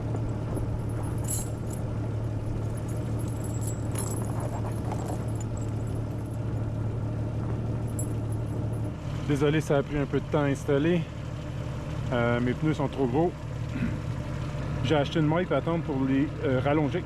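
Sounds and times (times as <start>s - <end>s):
tire chains clinking: 0.0s - 10.6s
steady low hum: 0.0s - 14.7s.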